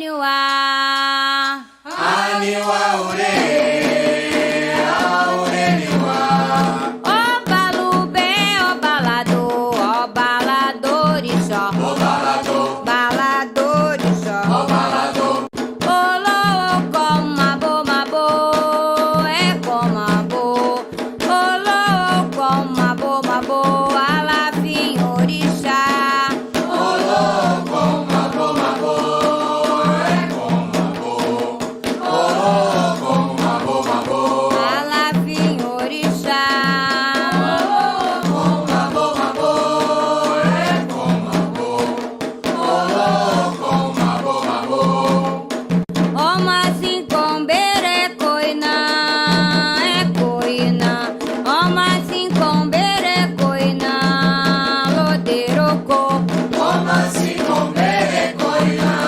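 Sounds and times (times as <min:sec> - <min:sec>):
voices singing a chant: 0:00.0 - 0:17.8, 0:19.1 - 0:45.6, 0:56.2 - 0:59.0
rhythmic drumming: 0:00.0 - 0:59.0.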